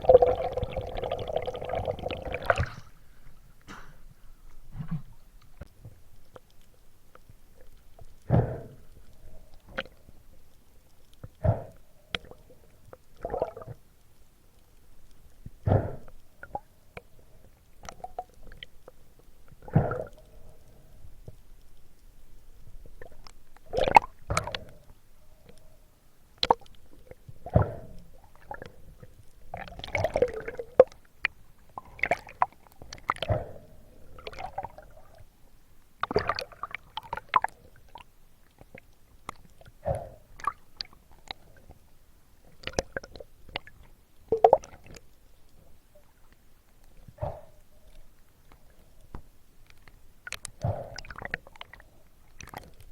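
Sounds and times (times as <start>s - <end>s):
water splashes: 0.0s - 3.0s, 29.5s - 31.0s, 36.0s - 38.0s
water gurgling and sloshing: 0.0s - 14.1s, 14.7s - 52.9s.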